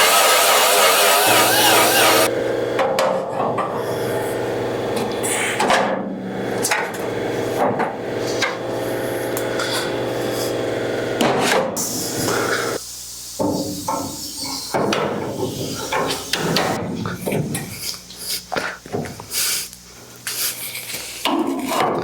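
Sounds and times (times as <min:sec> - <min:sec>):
angle grinder grinding metal: 0:00.0 - 0:02.3.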